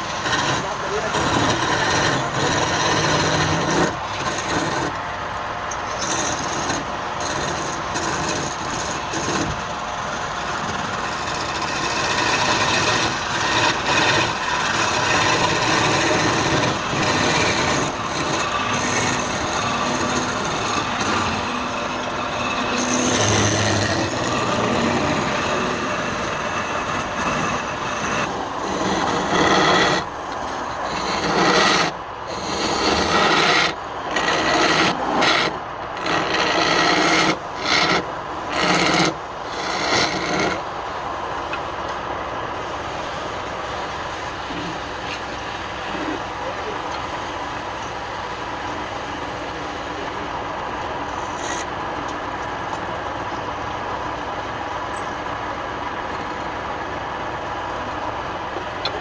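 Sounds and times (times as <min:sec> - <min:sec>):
tool scraping wood on lathe: 0:00.0 - 0:05.0, 0:05.7 - 0:40.7, 0:44.2 - 0:47.1, 0:51.0 - 0:51.8.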